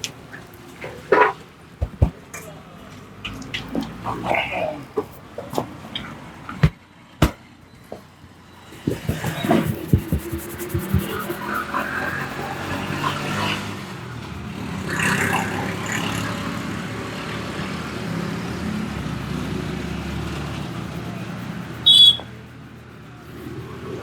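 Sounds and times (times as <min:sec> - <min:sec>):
roadside traffic: 0:00.0 - 0:24.0
vehicle engine running: 0:09.0 - 0:23.9.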